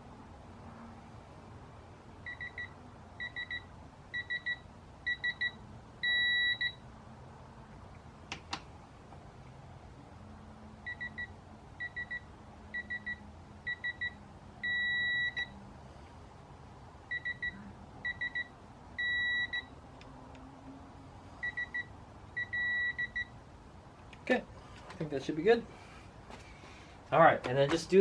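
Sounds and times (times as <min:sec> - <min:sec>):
long steady beep: 0:02.2 - 0:06.8, 0:10.8 - 0:15.6, 0:17.1 - 0:19.8, 0:21.4 - 0:23.4.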